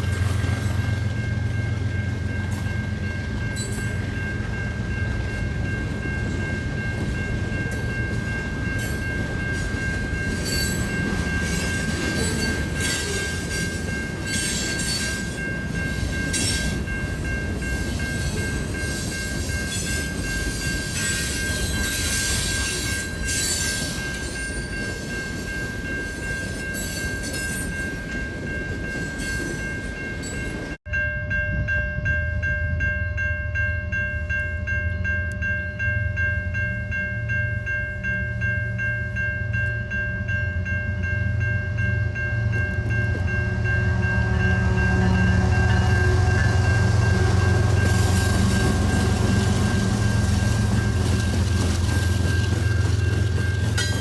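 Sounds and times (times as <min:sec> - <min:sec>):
train rumbling: 0:00.0 - 0:54.0.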